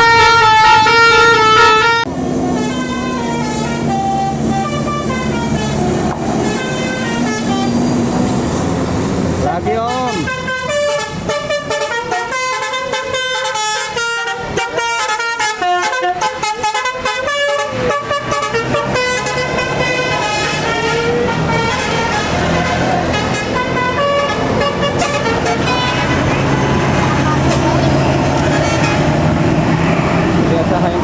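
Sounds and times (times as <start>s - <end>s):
musical bus horn: 0.0s - 8.4s, 9.5s - 30.5s
bus engine running: 0.0s - 31.0s
road noise: 0.0s - 31.0s.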